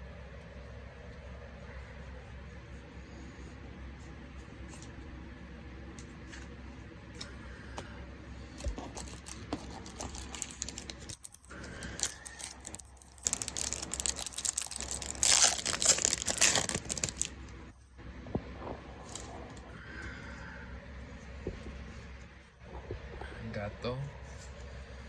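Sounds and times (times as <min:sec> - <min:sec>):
cards clicking and rustling: 0:08.6 - 0:17.6
foil wrapper tearing and crinkling: 0:08.9 - 0:17.6.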